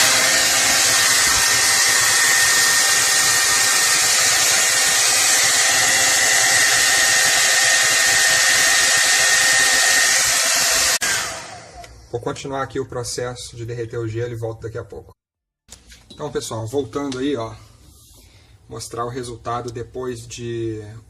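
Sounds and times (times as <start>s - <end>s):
hair dryer running: 0.0s - 11.9s.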